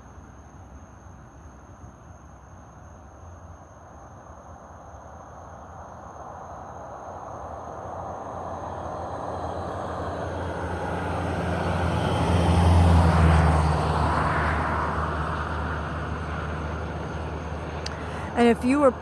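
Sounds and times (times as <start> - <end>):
vehicle passing by: 10.6 - 19.0.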